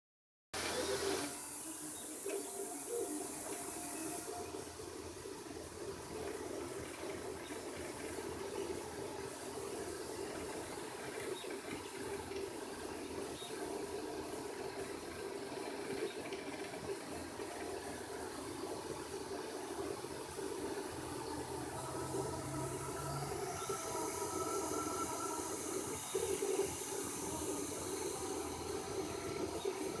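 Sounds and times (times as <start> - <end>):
fan hiss: 0.6 - 30.0
stepper motors humming: 17.2 - 30.0.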